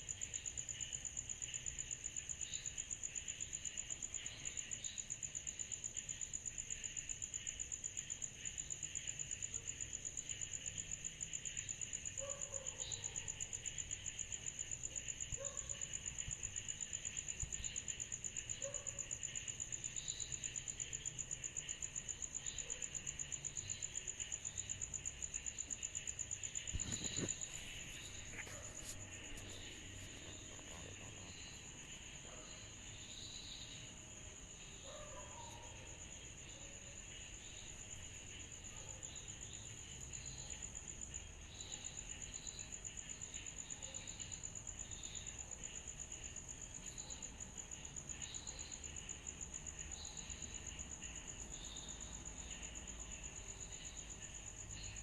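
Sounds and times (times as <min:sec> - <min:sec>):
cicadas trilling: 0:19.6 - 0:36.2.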